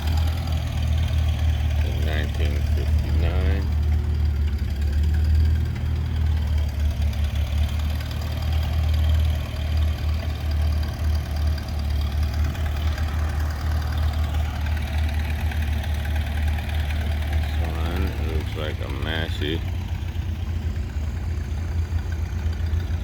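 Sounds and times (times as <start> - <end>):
engine idling: 0.0 - 23.0.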